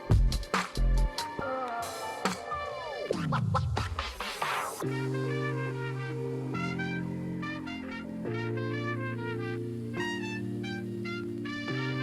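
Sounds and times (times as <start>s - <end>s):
brass-like chords with melody: 4.8s - 12.0s.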